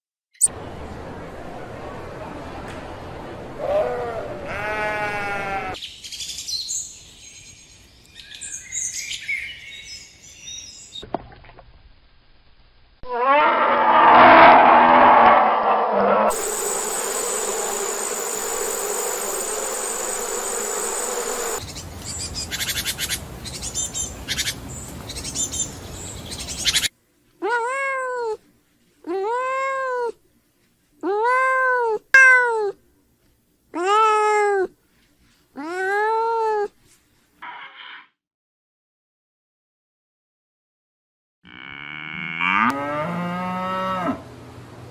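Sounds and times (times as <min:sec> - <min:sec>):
scratchy noise: 0:13.8 - 0:21.6
hiss with high whine: 0:16.3 - 0:21.6
cat meowing: 0:27.4 - 0:28.4, 0:31.1 - 0:32.8, 0:33.8 - 0:34.7.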